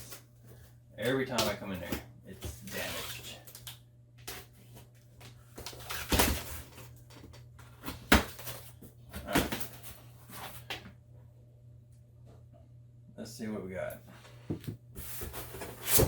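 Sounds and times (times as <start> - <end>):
cardboard box scraping and rustling: 15.0 - 16.0.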